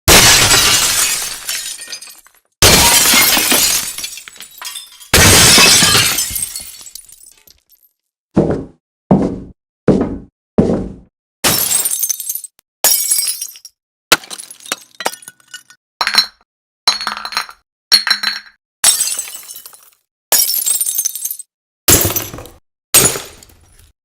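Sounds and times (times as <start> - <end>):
glass shattering: 0.1 - 7.9.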